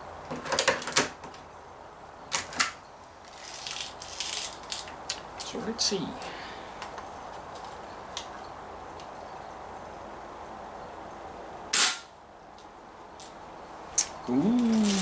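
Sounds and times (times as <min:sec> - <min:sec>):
steady background hiss: 0:00.0 - 0:15.0
pistol shot: 0:11.7 - 0:12.1.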